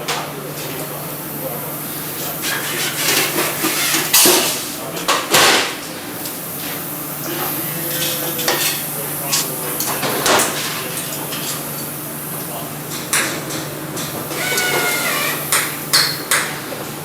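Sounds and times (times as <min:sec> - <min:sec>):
machine hum: 0:12.0 - 0:16.0.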